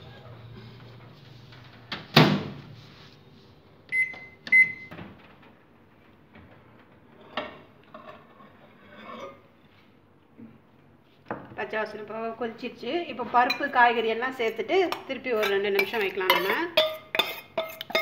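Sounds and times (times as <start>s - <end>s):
microwave oven humming: 0.0s - 2.7s
microwave short high beeps: 3.9s - 4.9s.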